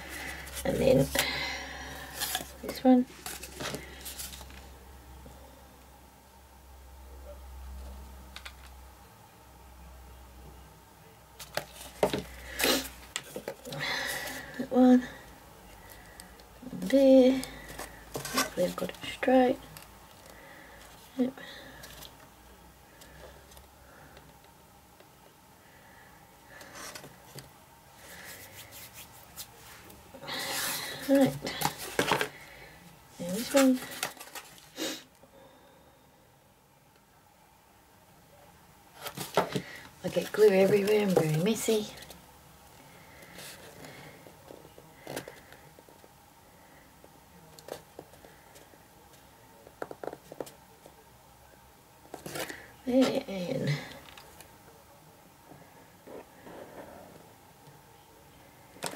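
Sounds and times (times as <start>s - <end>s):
cardboard pieces rustling: 2.1s - 4.6s, 30.4s - 32.4s, 33.2s - 34.7s.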